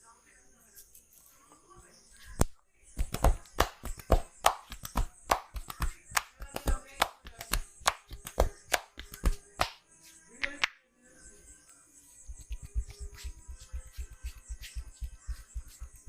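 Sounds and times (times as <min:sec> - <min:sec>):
hands slapping on a body: 0:03.0 - 0:09.8, 0:12.4 - 0:16.0.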